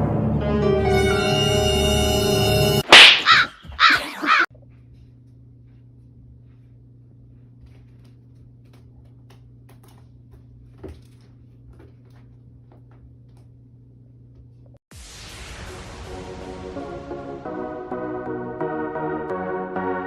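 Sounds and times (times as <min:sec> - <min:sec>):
low hum: 0:12.1 - 0:19.3.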